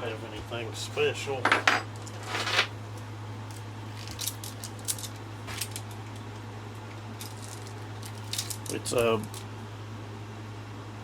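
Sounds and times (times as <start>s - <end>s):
steady low hum: 0.0s - 11.0s
metal chain clinking and rattling: 7.2s - 9.4s.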